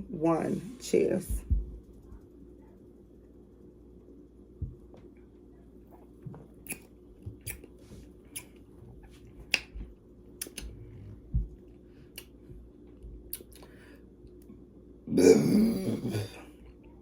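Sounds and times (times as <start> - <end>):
wet mouth clicks and lip smacks: 6.6 - 6.9, 10.4 - 10.7, 13.3 - 13.7
person swallowing and gulping: 15.1 - 16.4.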